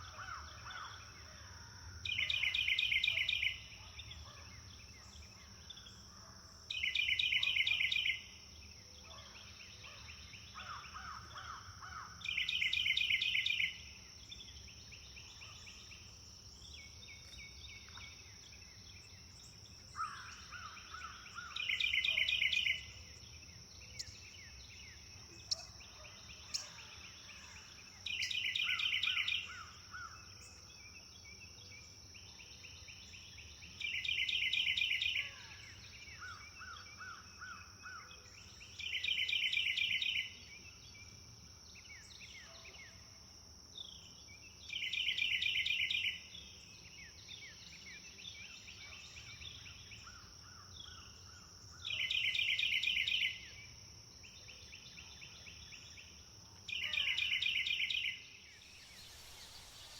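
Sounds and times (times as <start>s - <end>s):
softer bird chirps: 56.7s - 59.9s
steady high-pitched hum: 58.6s - 59.9s.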